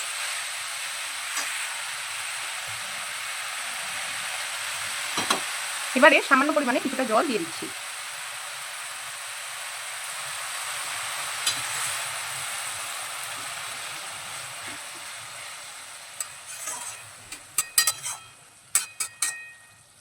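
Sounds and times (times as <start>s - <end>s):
curry sizzling in a pan: 0.0s - 20.0s
spoon knocking against pan: 17.3s - 19.7s.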